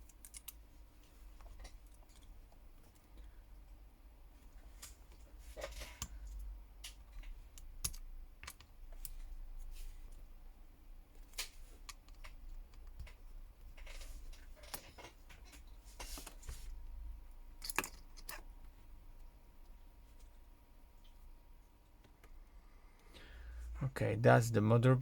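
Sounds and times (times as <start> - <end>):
small tools and phone parts clicking: 0.0 - 0.6, 5.6 - 9.2, 11.2 - 13.2, 17.6 - 18.4.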